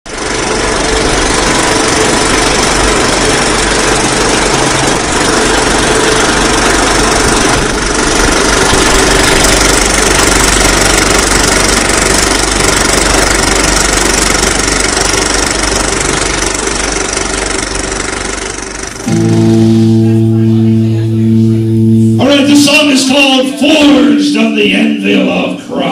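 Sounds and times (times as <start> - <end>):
distorted loud rock band: 19.0 - 25.0
clearer pitched music: 19.1 - 23.5.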